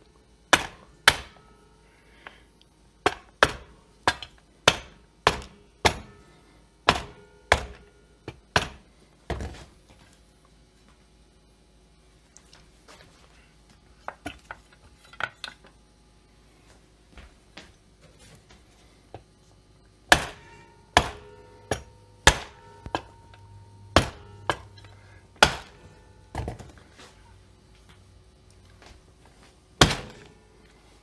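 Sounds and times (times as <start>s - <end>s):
sharp metal knocks with ringing: 20.1s - 26.4s.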